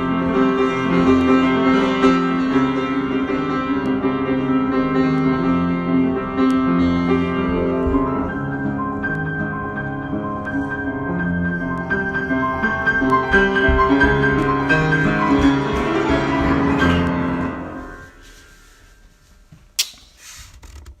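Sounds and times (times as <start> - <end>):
piano playing: 0.0 - 18.2
sharp click: 19.8 - 20.6.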